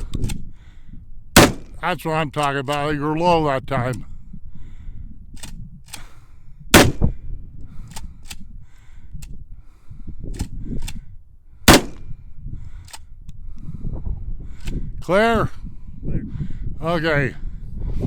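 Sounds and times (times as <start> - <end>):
shotgun pump clacks: 0.0 - 0.4, 5.4 - 6.1, 7.8 - 8.4, 10.4 - 11.0, 11.7 - 12.0
wind buffeting microphone: 0.0 - 18.0
shotgun blasts: 1.4 - 1.8, 6.8 - 7.2, 11.7 - 12.1.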